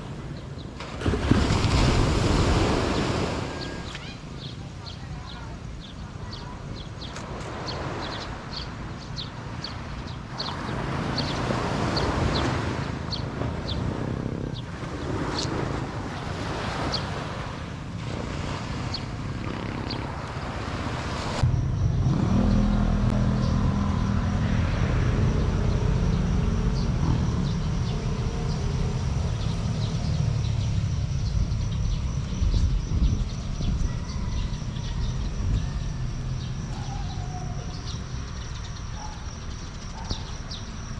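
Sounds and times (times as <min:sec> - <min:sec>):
vehicle engine and road noise: 0:00.0 - 0:40.9
thin steady whine: 0:21.3 - 0:40.9.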